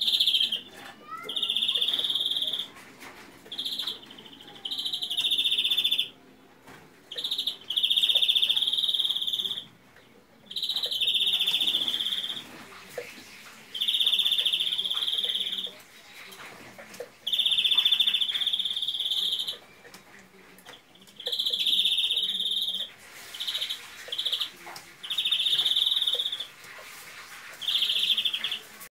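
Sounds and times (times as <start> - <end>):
greenfinch buzzing trill song: 7.1 - 9.6.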